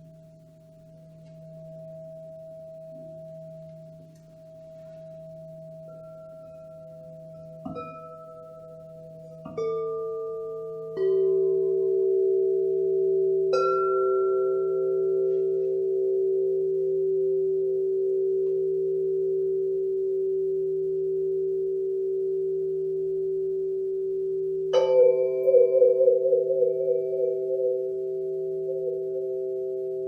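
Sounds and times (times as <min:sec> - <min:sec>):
singing bowls ringing: 0:00.0 - 0:19.3, 0:24.6 - 0:30.0.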